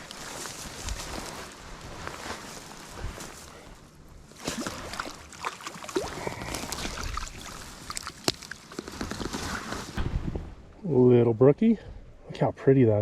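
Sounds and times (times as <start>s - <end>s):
water splashing and sloshing: 4.2s - 10.8s.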